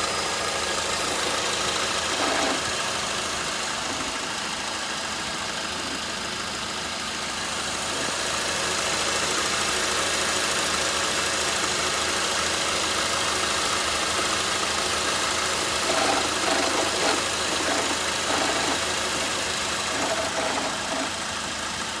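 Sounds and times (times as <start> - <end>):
car engine idling: 0.0 - 22.0
intermittent rattle: 2.0 - 2.9, 15.8 - 21.3.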